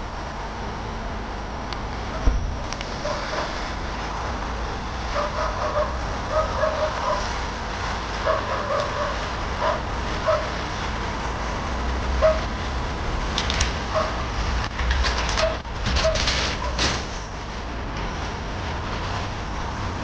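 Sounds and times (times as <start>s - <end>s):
steady background rumble: 0.0s - 20.0s
dog barking: 3.0s - 3.5s, 5.1s - 7.3s, 8.2s - 10.6s, 12.2s - 12.5s, 13.9s - 14.2s, 15.4s - 16.8s.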